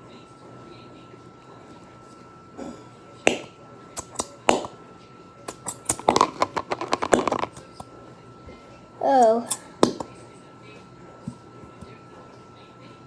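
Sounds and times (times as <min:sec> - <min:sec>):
glue bottle squeezed clicks and crackles: 0:03.3 - 0:04.7, 0:05.5 - 0:07.8.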